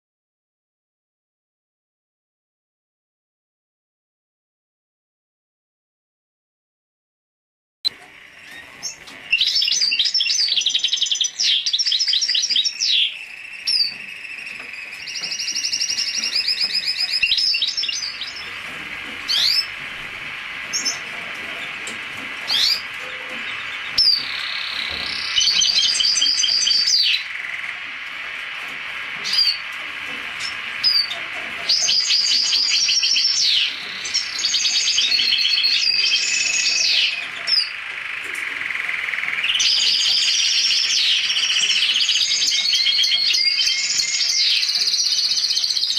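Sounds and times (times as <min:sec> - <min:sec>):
single bird chirps: 0:07.9 - 0:19.8
bird singing trills: 0:07.9 - 0:45.9.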